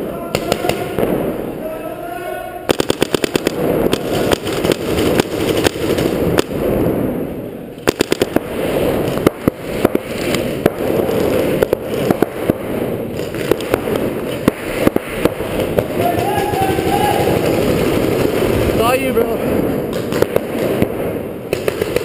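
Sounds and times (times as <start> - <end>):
paintball markers firing: 0.4 - 1.1, 2.7 - 6.5, 7.8 - 12.6, 13.2 - 19.0, 19.9 - 22.0.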